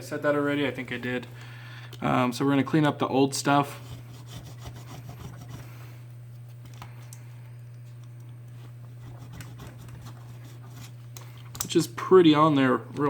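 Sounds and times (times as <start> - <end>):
steady low hum: 0.0 - 13.0
faint scraping of adhesive: 8.8 - 11.0.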